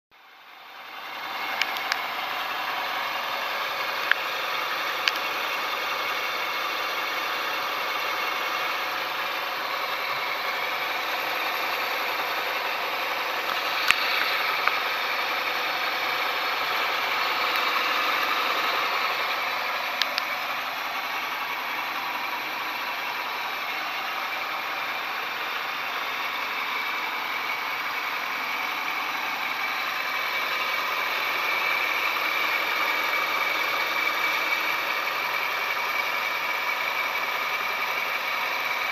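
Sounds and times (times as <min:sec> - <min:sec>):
car engine idling: 0:00.1 - 0:38.9
rustling hissing engine noise: 0:00.9 - 0:38.8
sharp ticks: 0:01.4 - 0:20.6.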